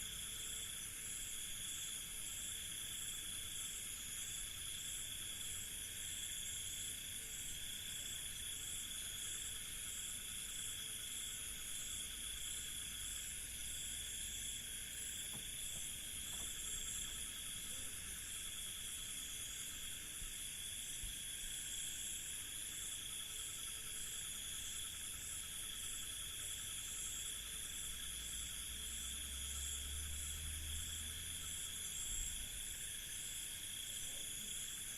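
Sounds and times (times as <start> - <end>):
crickets chirping: 0.0 - 34.9.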